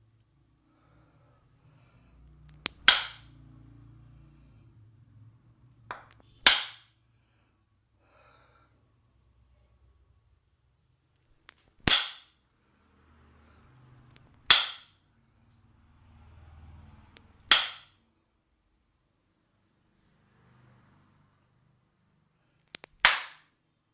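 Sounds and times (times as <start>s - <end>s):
sharp cracks of percussive strikes: 2.6s - 3.4s, 6.4s - 7.0s, 11.8s - 12.4s, 14.4s - 15.0s, 17.4s - 18.0s, 22.8s - 23.5s.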